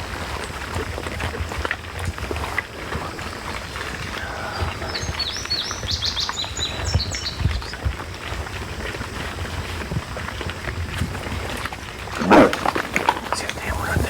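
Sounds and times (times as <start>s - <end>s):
songbird chirping: 1.6s - 9.3s, 11.3s - 14.0s.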